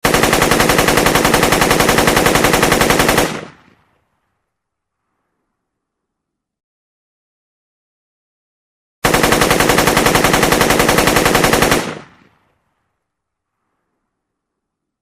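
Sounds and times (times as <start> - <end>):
machine gun firing: 0.0 - 3.7, 9.0 - 12.4.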